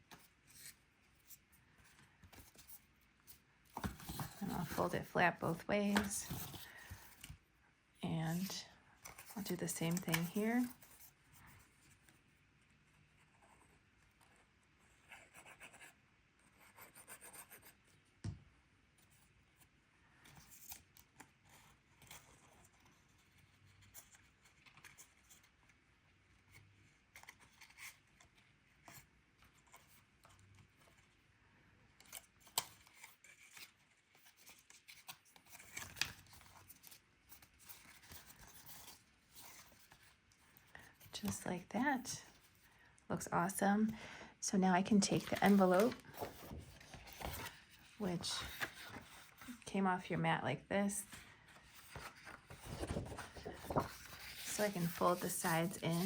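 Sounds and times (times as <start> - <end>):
cardstock rustling and creasing: 3.7 - 7.4, 8.3 - 11.1, 20.3 - 25.8, 26.4 - 31.2, 32.0 - 41.6, 44.9 - 49.6, 51.0 - 56.0.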